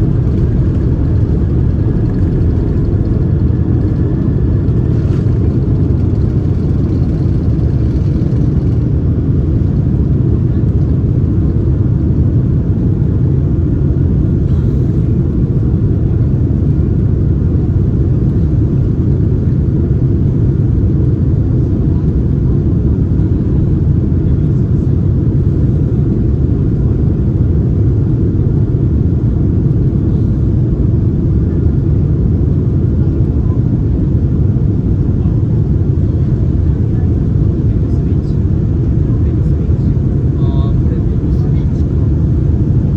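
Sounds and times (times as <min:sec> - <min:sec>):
rushing air: 0:00.0 - 0:08.8
airplane cabin engine rumble: 0:00.0 - 0:42.9.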